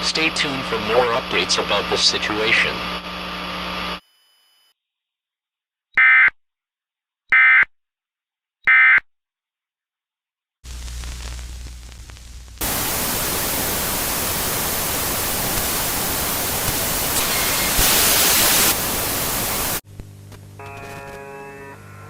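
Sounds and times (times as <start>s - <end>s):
white-noise static hiss: 10.7s - 20.6s.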